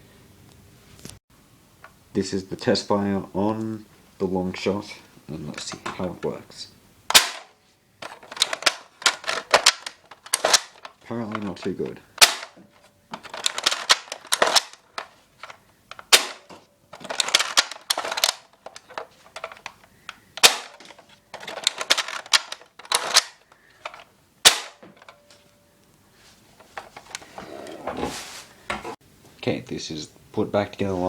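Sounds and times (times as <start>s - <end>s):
toy blaster bolt clicking: 7.1s - 12.6s, 13.2s - 20.8s, 21.4s - 24.8s.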